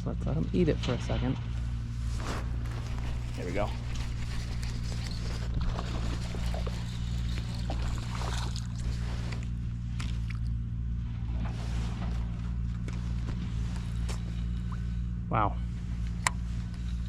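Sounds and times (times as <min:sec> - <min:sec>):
low mechanical drone: 0:00.0 - 0:17.0
light splashy noises: 0:02.1 - 0:10.6.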